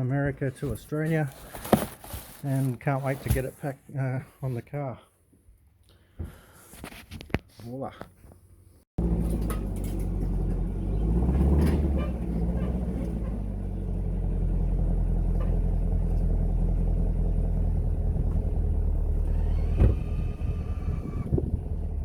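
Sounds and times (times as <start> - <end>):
car engine rumble: 9.0 - 22.0.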